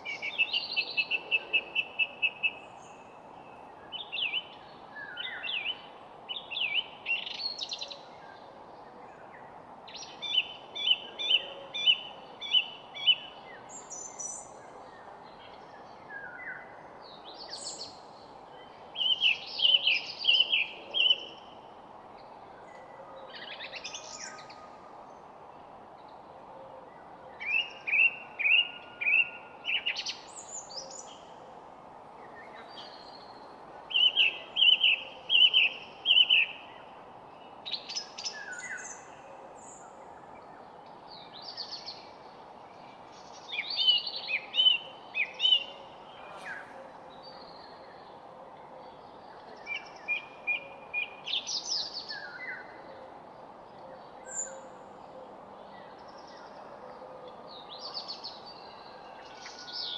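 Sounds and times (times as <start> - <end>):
songbirds singing: 0.0 - 59.9.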